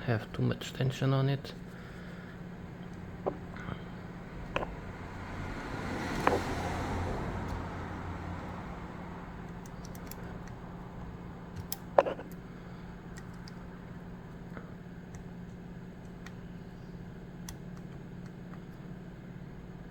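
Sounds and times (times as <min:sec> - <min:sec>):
steady low hum: 0:00.0 - 0:19.9
lock pick metallic clicks: 0:09.4 - 0:10.6, 0:11.5 - 0:12.4, 0:13.1 - 0:13.6.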